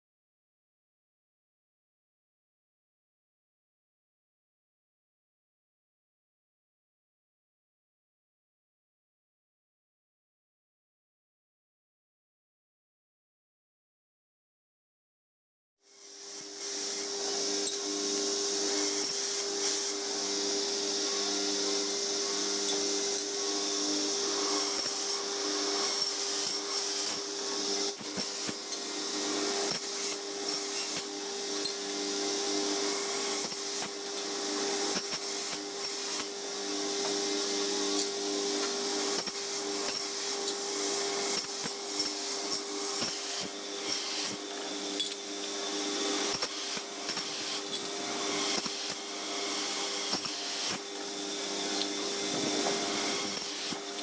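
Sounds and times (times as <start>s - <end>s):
power tool humming: 15.9s - 54.0s.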